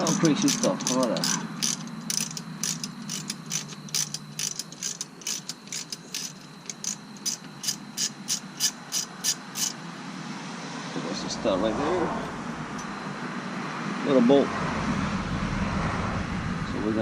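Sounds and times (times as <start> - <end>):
ratchet wrench clicking: 0.0 - 9.8.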